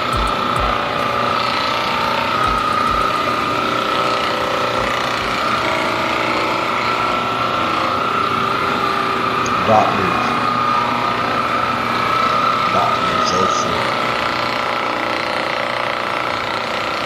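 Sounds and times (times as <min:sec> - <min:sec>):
low thuds: 0:00.0 - 0:05.9.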